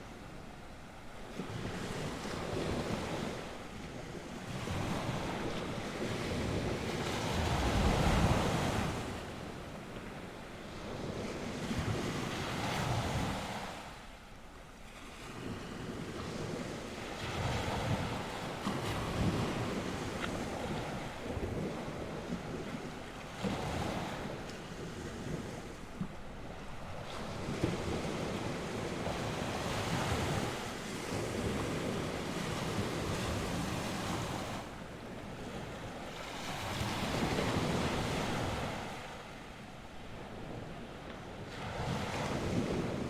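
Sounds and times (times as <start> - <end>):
wind buffeting microphone: 0.0 - 14.0, 15.2 - 43.0
sea waves washing onto shore: 14.9 - 43.0.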